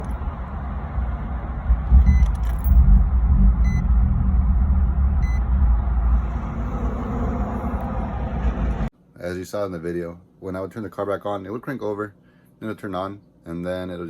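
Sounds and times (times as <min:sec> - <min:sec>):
car engine rumbling: 0:00.0 - 0:08.9
short electronic beeps: 0:02.0 - 0:02.3, 0:03.6 - 0:03.9, 0:05.2 - 0:05.4.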